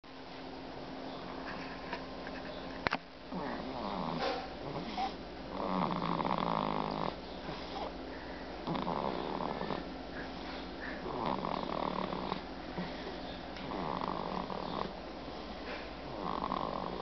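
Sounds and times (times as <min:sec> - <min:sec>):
rasping fluttering snores: 0:03.3 - 0:08.0, 0:08.6 - 0:13.0, 0:13.6 - 0:15.0, 0:16.0 - 0:17.0.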